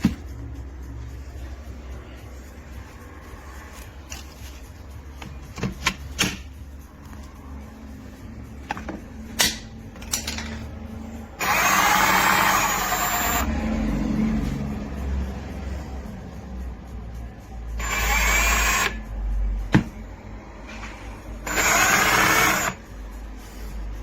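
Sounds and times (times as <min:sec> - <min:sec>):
power tool running: 0:11.4 - 0:13.5, 0:17.8 - 0:19.0, 0:21.4 - 0:22.8.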